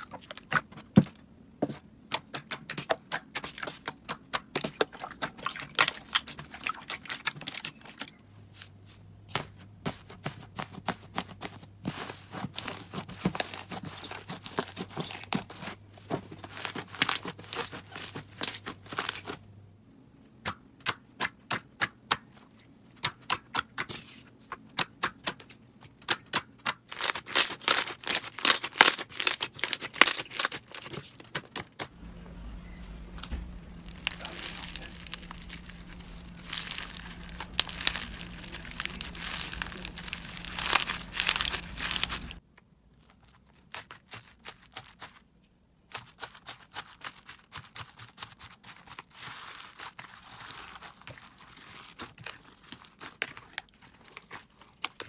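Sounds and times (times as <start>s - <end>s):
slime crackling and popping: 33.0s - 42.4s.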